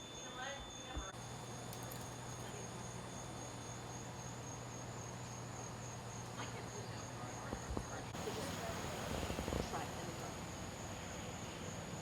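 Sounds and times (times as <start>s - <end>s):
insects chirring: 0.0s - 8.0s.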